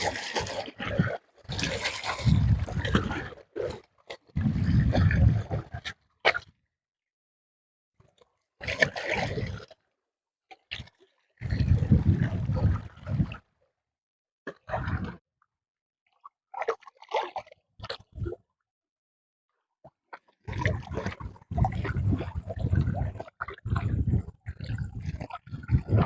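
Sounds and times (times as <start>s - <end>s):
water splashing and gurgling: 0.0s - 6.4s, 8.6s - 9.8s, 10.7s - 13.5s, 16.5s - 18.4s, 20.1s - 26.0s.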